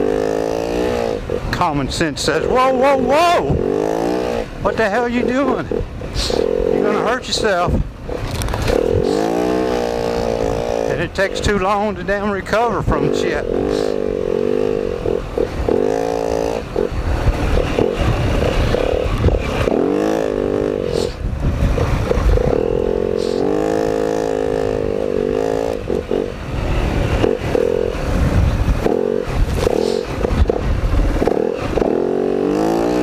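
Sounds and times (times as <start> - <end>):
dirt bike engine revving: 0.0 - 33.0.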